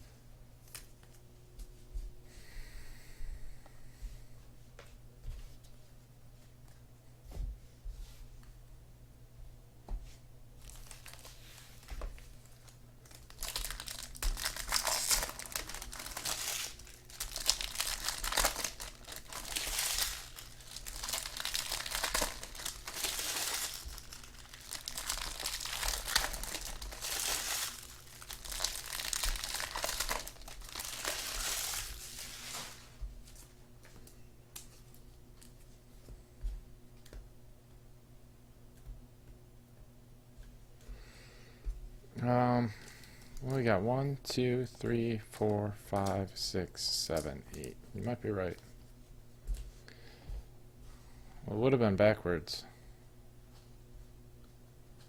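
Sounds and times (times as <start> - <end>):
wrappers tearing and crinkling: 10.6 - 33.5
quiet card handling: 47.0 - 49.8.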